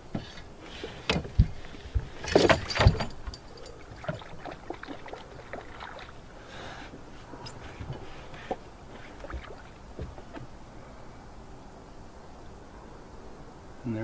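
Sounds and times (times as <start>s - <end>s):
water splashing beside a boat: 0.7s - 6.5s, 7.4s - 10.6s
dull knocks: 1.1s - 3.3s.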